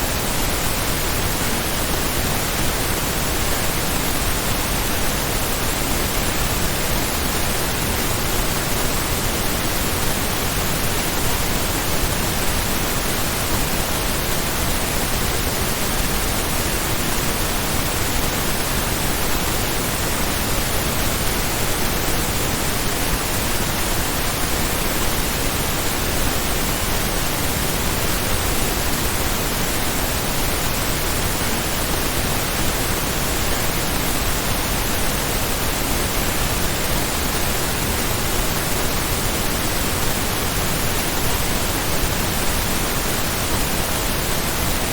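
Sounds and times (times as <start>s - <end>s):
pink noise hiss: 0.0s - 44.9s.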